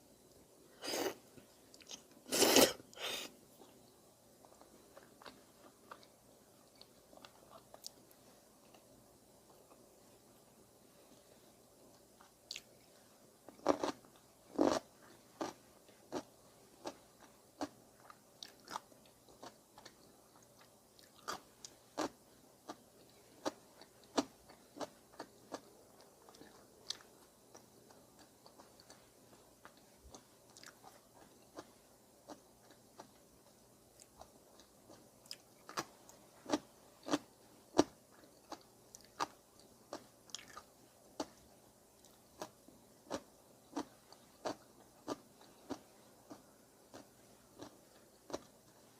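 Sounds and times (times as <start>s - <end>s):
person chewing food: 0.8s - 3.8s, 4.4s - 9.9s, 11.9s - 48.9s.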